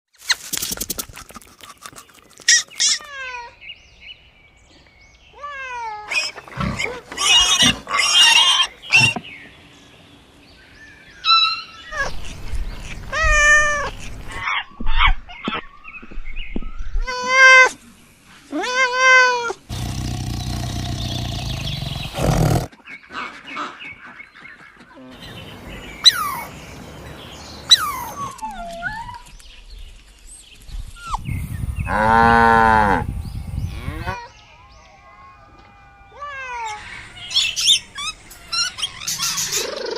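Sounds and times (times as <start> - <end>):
farm animals crying: 5.4 - 9.2, 31.9 - 39.8
harsh noisy animal call: 19.7 - 22.7.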